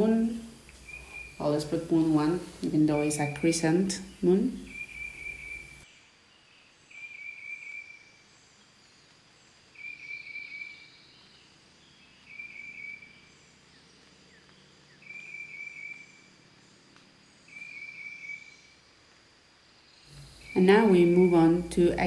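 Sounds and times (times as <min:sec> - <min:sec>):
animal high chirping call: 0:04.0 - 0:05.8.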